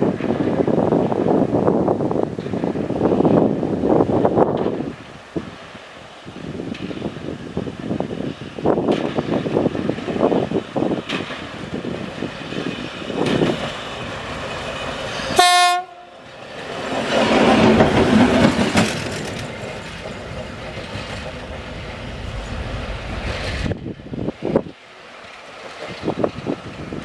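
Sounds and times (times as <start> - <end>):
wheels on rails: 2.3 - 15.4, 16.2 - 27.0
locomotive engine rumble: 4.5 - 27.0
locomotive horn blast: 15.4 - 16.2.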